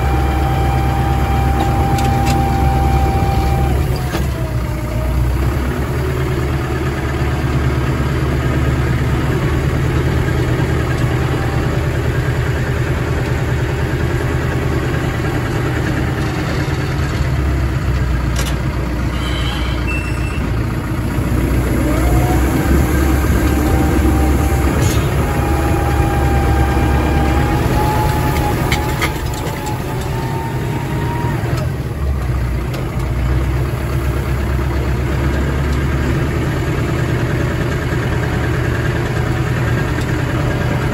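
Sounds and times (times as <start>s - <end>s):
farm machinery engine running: 0.0s - 40.9s.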